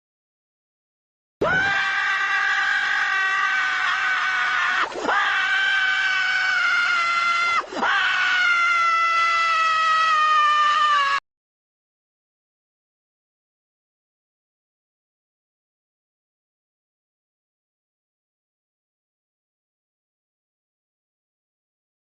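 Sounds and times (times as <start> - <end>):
cartoon scream: 1.4 - 11.2.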